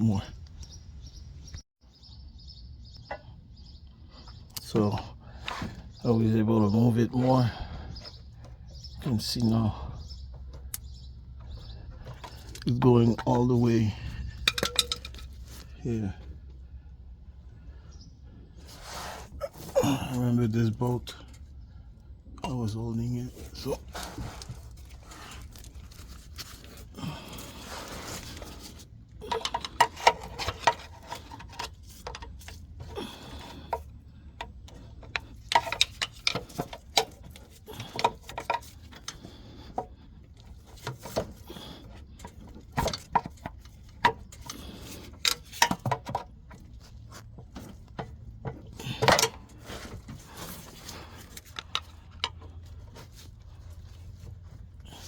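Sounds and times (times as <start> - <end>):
tools clinking against metal: 14.4 - 15.4.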